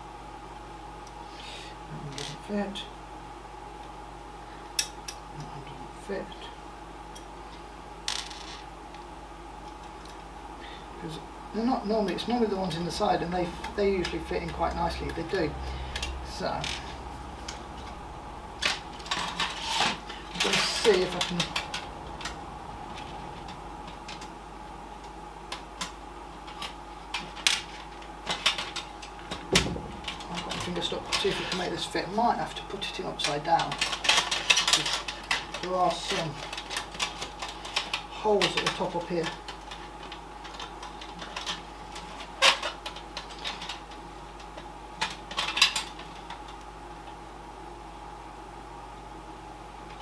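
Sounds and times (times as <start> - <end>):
faint steady hum: 0.0 - 50.0
small metal parts clicking: 25.5 - 31.8, 32.7 - 46.6.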